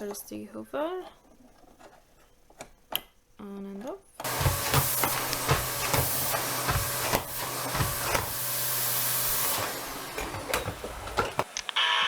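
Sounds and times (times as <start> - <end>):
vacuum cleaner running: 4.2 - 12.0.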